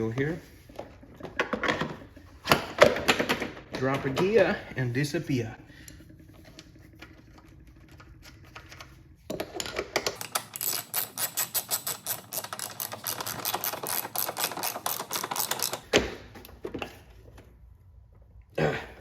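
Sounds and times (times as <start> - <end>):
socket ratchet clicking: 10.1 - 15.8.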